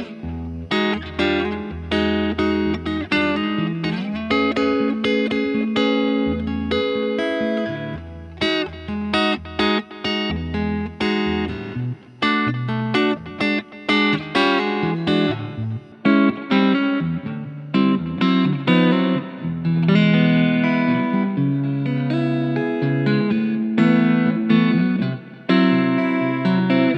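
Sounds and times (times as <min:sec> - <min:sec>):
clean electric guitar playing: 0:00.0 - 0:26.9.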